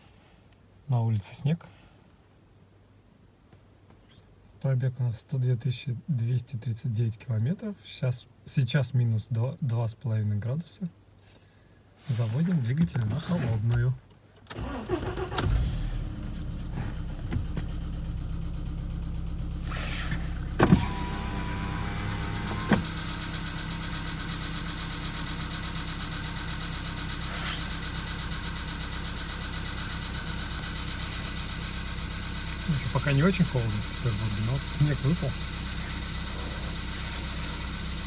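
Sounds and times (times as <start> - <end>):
car engine starting and idling: 12.5 - 38.0.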